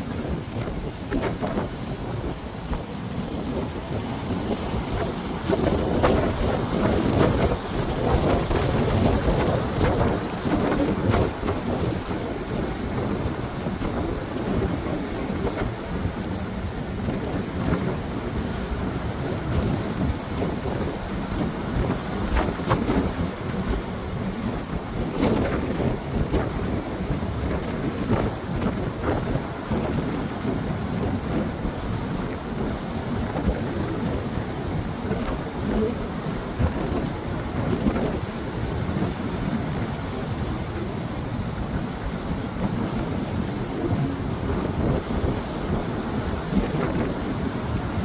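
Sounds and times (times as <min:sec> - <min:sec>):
sea waves washing in: 0:00.0 - 0:48.0.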